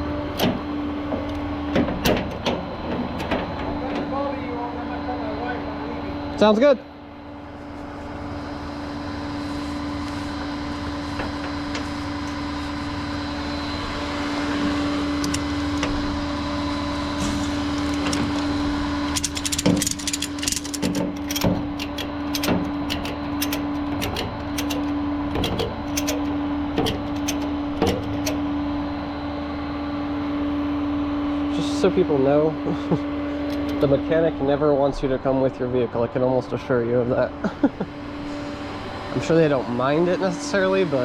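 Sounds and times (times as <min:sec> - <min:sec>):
truck engine drone: 0:00.0 - 0:41.0
clicks and rattles: 0:17.2 - 0:28.4.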